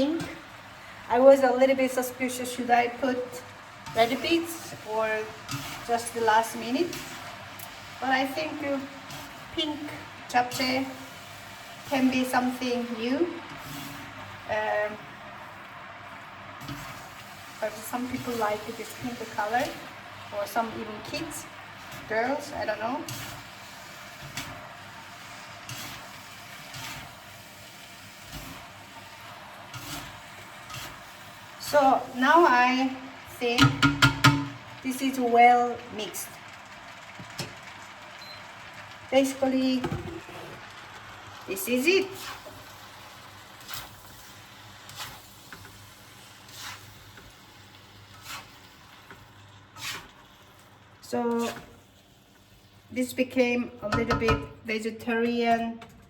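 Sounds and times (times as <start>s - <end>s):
noodles stirred in bowl: 0.0s - 53.4s
utensil scraping and clicking in bowl: 5.4s - 5.9s, 23.0s - 23.4s, 29.7s - 31.0s.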